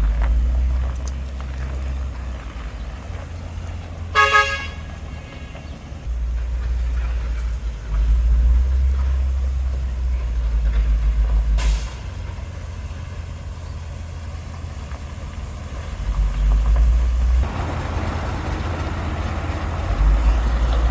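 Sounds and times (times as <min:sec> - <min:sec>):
construction machine engine rumbling: 0:00.0 - 0:20.9
short hiss: 0:11.6 - 0:12.0.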